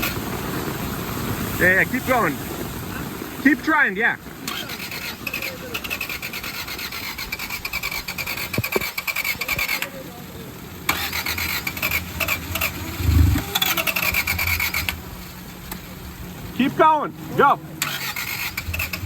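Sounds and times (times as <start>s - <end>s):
engine cranking with starter motor: 4.4s - 10.1s, 10.8s - 15.8s, 17.8s - 19.0s.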